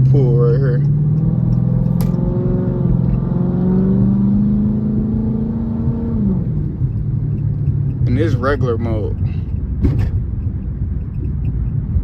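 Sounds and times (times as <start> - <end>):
car engine accelerating hard: 0.0 - 9.2.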